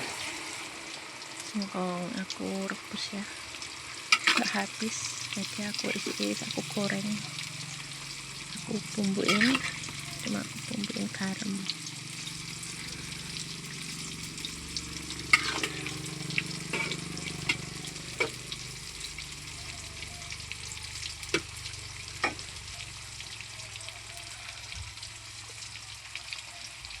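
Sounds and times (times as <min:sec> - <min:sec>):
food frying in hot oil: 0:00.0 - 0:27.0
utensil clicking in pan: 0:04.1 - 0:04.6, 0:08.2 - 0:19.9.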